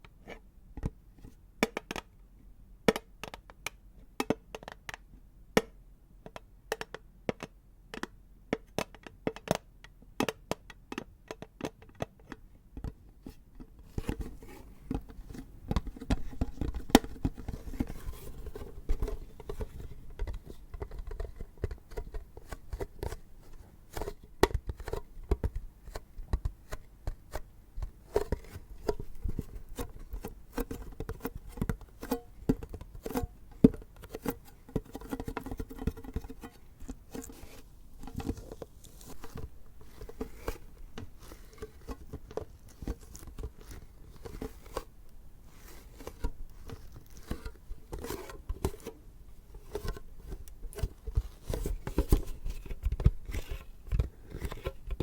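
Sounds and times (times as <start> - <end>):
scratching and rubbing on tin: 28.0 - 44.9.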